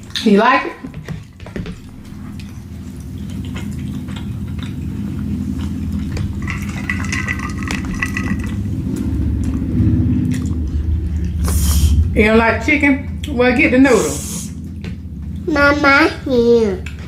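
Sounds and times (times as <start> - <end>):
steady low rumble: 0.0 - 17.0
person chewing: 1.0 - 12.1.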